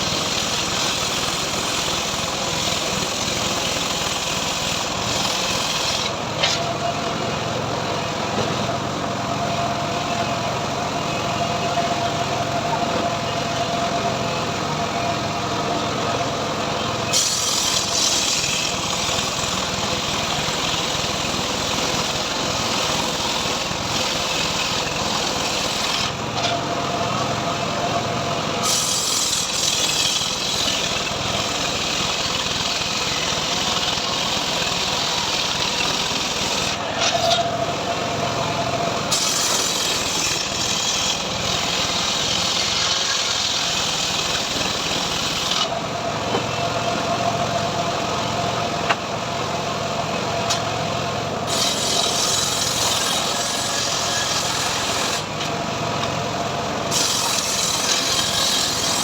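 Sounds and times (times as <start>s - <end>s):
saw blade cutting wood: 0.0s - 6.8s, 17.0s - 26.6s, 28.6s - 37.6s, 39.1s - 45.8s, 51.4s - 55.5s, 56.8s - 59.0s
sawmill engine running: 0.0s - 59.0s.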